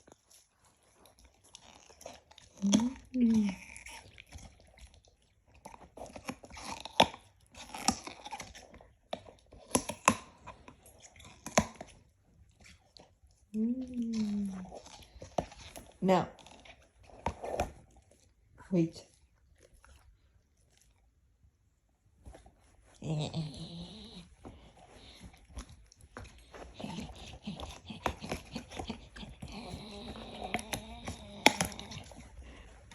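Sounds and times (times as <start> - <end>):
dog clicking and smacking: 0.0 - 21.4, 22.2 - 32.9
dog making clicking noises: 26.2 - 32.2.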